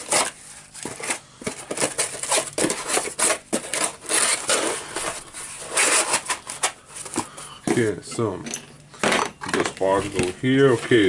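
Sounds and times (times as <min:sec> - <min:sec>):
small metal parts clinking: 0:08.1 - 0:09.8.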